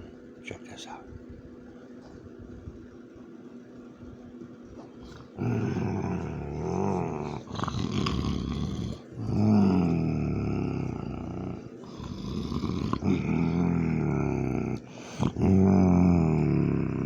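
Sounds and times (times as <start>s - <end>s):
dog growling: 4.7s - 17.0s.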